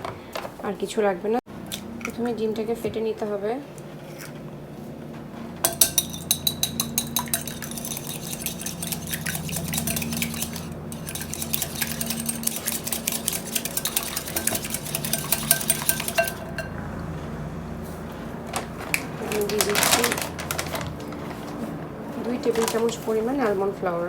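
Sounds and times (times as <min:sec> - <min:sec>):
utensil clicking against bowl: 0:05.7 - 0:16.7.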